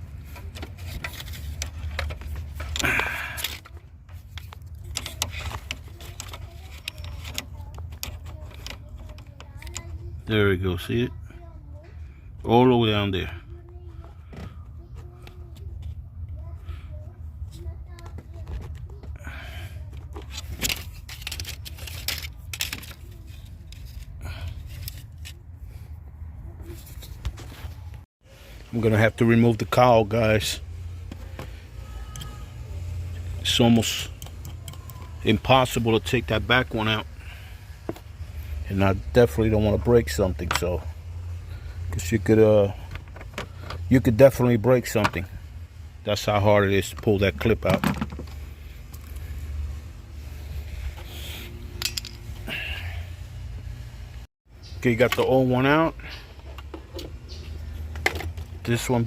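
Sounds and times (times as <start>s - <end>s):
hands handling clicks and rustles: 0.0s - 10.2s, 17.4s - 25.9s, 29.6s - 41.2s, 41.8s - 45.4s, 54.7s - 59.0s.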